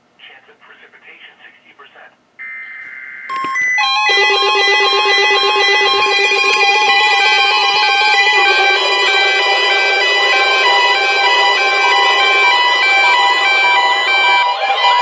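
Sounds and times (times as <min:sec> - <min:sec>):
electronic alert beeps: 0:02.4 - 0:13.5.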